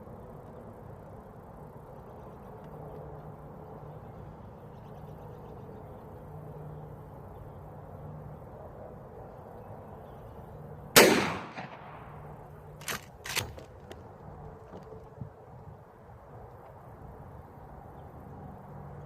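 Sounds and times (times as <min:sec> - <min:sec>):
shotgun blast with echo: 0:11.0 - 0:12.3
shotgun pump action clacks: 0:12.8 - 0:14.0.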